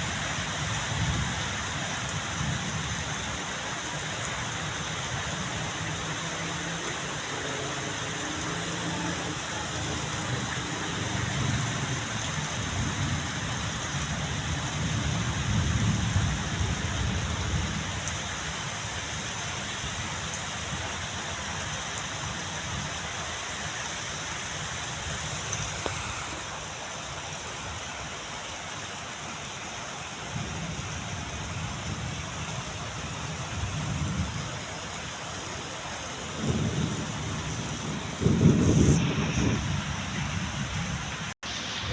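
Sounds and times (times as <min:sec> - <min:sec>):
heavy rain: 0:00.0 - 0:41.9
thunder rumbling: 0:07.8 - 0:18.1, 0:36.2 - 0:41.9.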